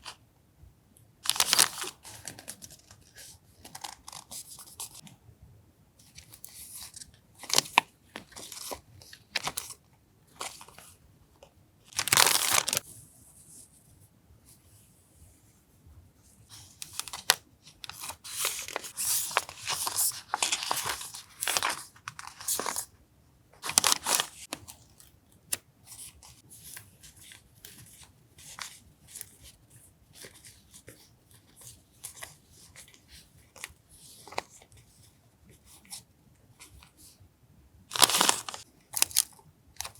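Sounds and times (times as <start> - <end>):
paper rustling and tearing: 12.0 - 12.8, 16.9 - 22.9, 23.6 - 24.5, 37.9 - 39.2.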